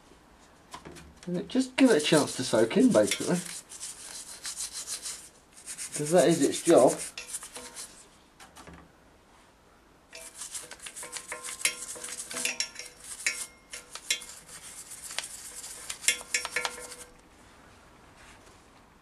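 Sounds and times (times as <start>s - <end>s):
metal tools clinking and scraping: 2.0s - 3.6s, 6.4s - 7.9s, 10.2s - 14.6s, 15.7s - 17.2s.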